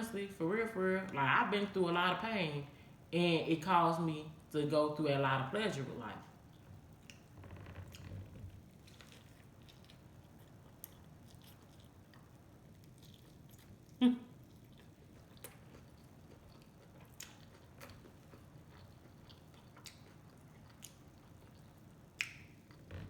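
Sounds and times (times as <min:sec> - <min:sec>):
person chewing: 0:07.9 - 0:22.9
faint wet mouth clicks: 0:22.2 - 0:22.5.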